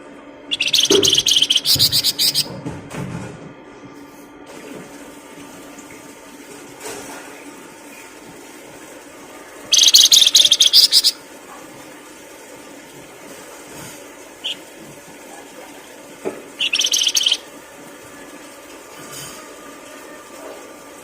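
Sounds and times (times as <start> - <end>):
short bird chirp: 0.5 - 2.5, 16.6 - 17.4
songbird chattering: 0.5 - 2.5, 9.7 - 11.2, 16.6 - 17.4.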